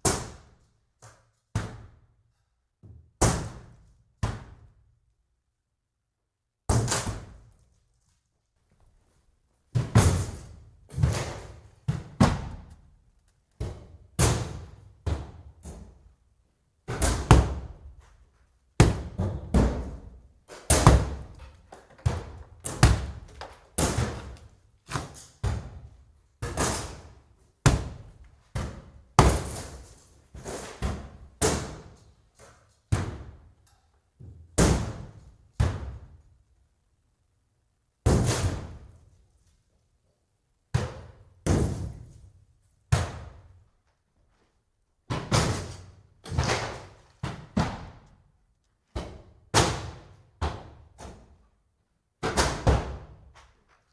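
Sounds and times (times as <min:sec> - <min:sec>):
axe striking wooden boards: 0:09.7 - 0:12.7, 0:18.8 - 0:21.4, 0:22.0 - 0:25.8, 0:26.4 - 0:32.0, 0:45.1 - 0:48.0, 0:52.2 - 0:53.2.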